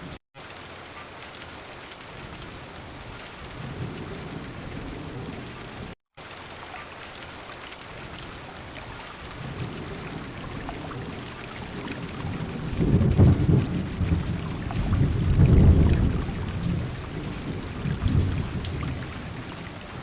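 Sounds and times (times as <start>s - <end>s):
heavy rain on car window: 0.4s - 20.0s
thunder rolling: 9.4s - 20.0s.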